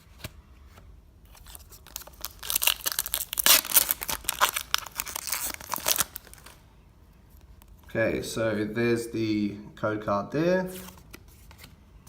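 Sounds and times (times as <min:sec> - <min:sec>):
foil wrapper tearing and crinkling: 0:01.3 - 0:06.6.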